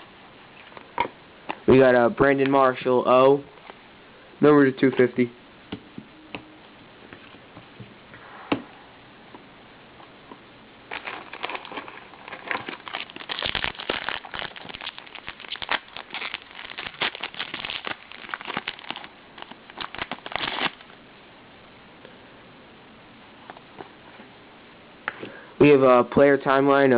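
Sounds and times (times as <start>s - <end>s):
trading cards and packaging rustling: 10.9s - 20.9s.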